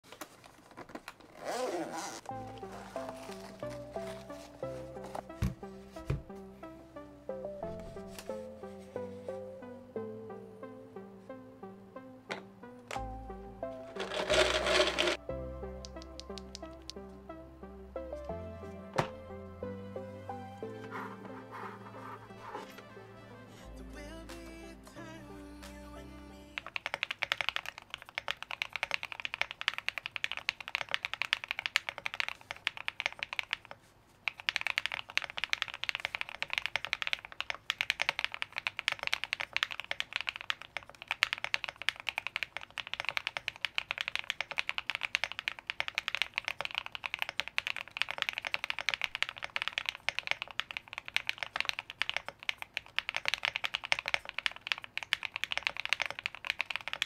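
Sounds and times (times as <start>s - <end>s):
fast typing on mechanical keyboard: 13.8s - 15.2s, 26.6s - 57.0s.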